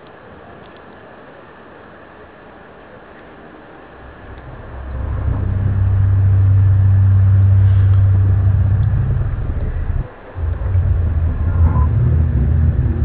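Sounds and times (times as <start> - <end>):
loud low droning hum: 3.9 - 13.0.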